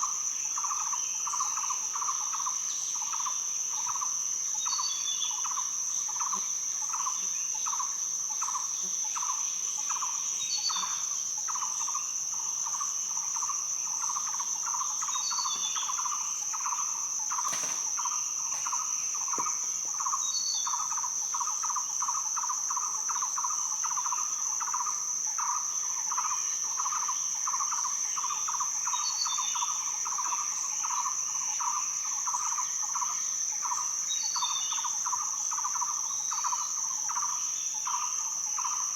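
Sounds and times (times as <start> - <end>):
high-pitched cicada drone: 0.0 - 38.9
pulsing insect chirp: 0.0 - 38.9.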